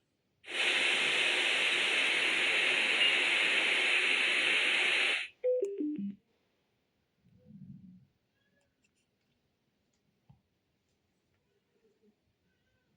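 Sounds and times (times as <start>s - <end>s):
radio static hiss: 0.5s - 5.4s.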